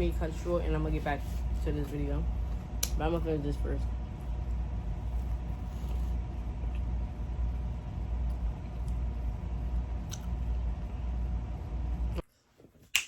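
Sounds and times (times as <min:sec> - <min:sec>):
faint even hum: 0:00.0 - 0:12.2
low rumble: 0:00.0 - 0:12.2.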